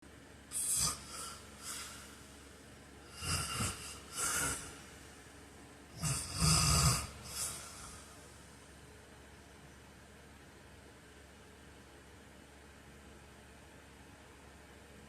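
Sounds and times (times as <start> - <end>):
man snoring: 0.5 - 2.3, 3.0 - 5.0, 6.0 - 8.2
soft breath: 0.6 - 2.6, 7.2 - 8.6.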